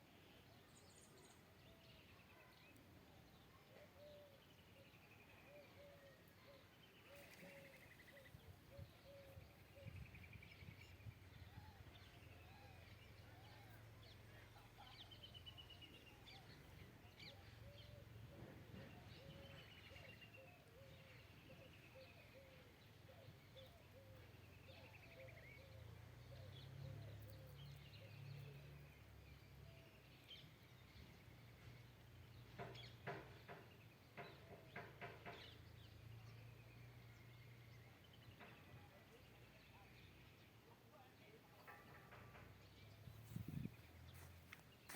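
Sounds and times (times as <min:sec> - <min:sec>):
birds chirping: 0:00.0 - 0:44.9.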